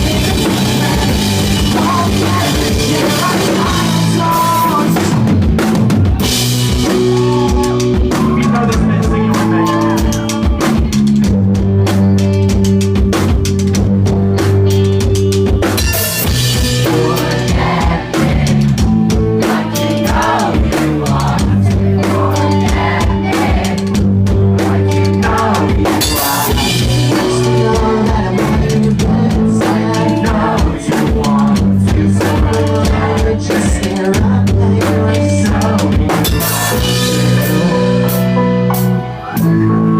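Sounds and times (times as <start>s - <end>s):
person singing: 0.0s - 5.3s, 6.7s - 11.1s, 16.8s - 18.8s, 24.6s - 38.5s
drum kit: 0.0s - 39.9s
guitar and bass chords: 0.0s - 39.9s.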